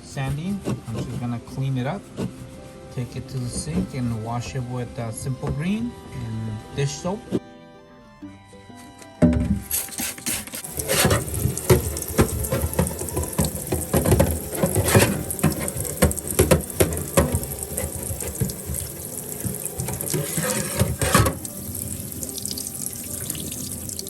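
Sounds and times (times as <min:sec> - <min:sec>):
tap water running into sink: 0:09.8 - 0:24.0
metal knocks and clatters: 0:10.7 - 0:21.5.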